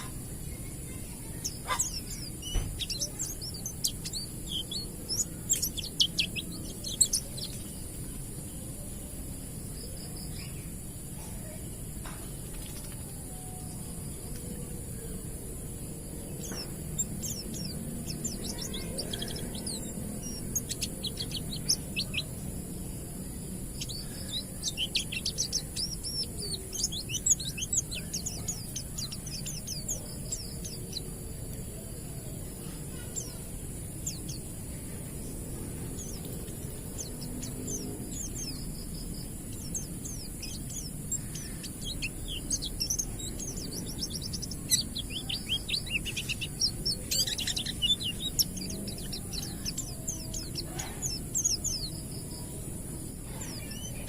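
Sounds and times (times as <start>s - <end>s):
bird twittering chirps: 0.0s - 54.0s
steady high hiss: 0.0s - 54.0s.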